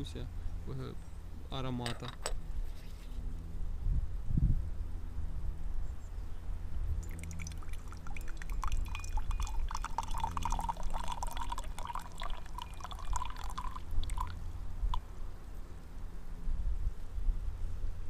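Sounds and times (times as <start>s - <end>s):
liquid dripping: 7.0s - 15.0s
tea pouring into a pitcher: 7.0s - 15.0s.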